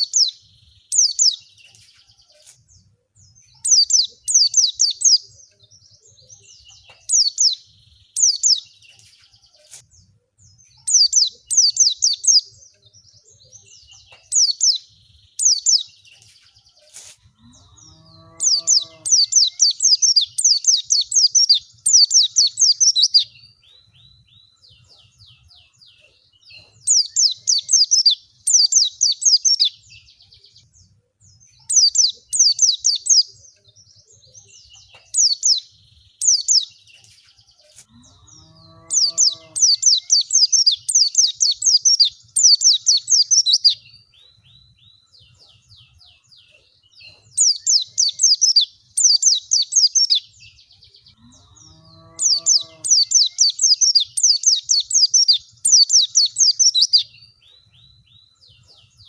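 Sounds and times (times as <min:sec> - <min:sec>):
bird twittering song: 0:00.0 - 0:59.0
low rising bird call: 0:38.0 - 0:40.2, 0:51.2 - 0:53.5.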